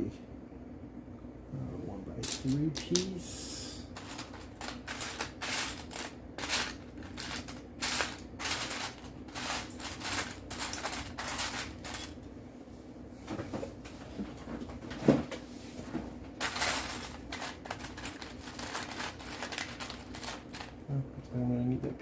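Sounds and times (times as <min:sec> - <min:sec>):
plastic bricks clattering: 0:04.0 - 0:12.2, 0:16.4 - 0:20.8.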